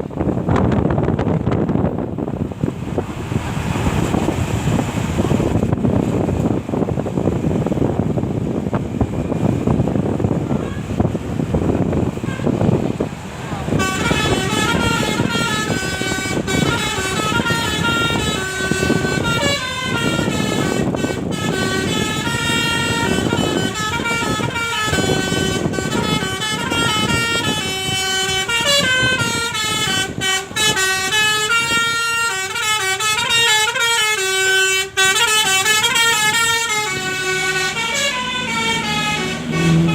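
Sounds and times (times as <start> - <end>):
multi-tone air horn melody: 10.5 - 11.0, 12.2 - 12.7, 13.7 - 39.9.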